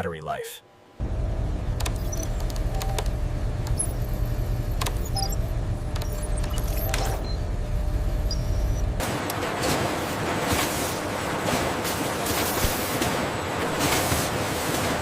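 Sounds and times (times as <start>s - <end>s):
machinery low rumble: 0.8s - 12.2s
sharp mechanical clicks: 1.7s - 4.0s, 4.8s - 7.3s
electronic chirps: 4.9s - 7.4s.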